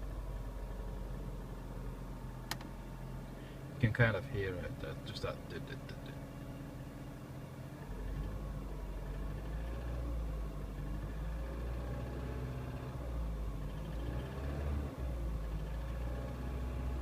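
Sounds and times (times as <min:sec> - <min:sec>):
car engine running: 0:00.0 - 0:17.0.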